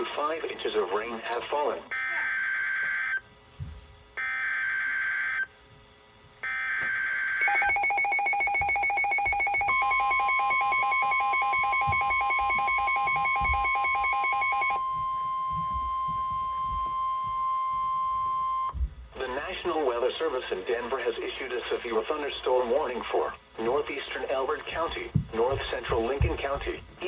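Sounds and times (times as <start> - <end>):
steady warning alarm tone: 1.0 - 3.4, 4.1 - 5.6, 6.3 - 20.4
rapid pulsing alarm beep: 1.9 - 3.3, 4.2 - 5.5, 6.4 - 18.8
buzzing data bursts: 7.4 - 18.8.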